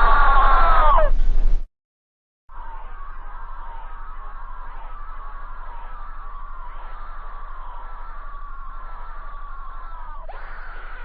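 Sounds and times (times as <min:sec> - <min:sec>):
low steady hum: 0:02.5 - 0:11.0.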